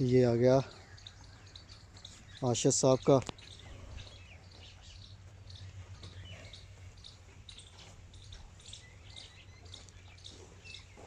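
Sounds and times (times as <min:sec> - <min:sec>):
small birds chirping: 0:00.0 - 0:11.0
steady low hum: 0:03.3 - 0:11.0.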